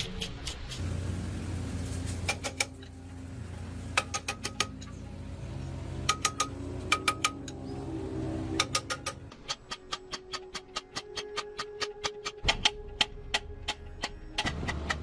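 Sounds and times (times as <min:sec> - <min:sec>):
sharp metallic taps: 0:03.9 - 0:05.0, 0:06.0 - 0:07.6.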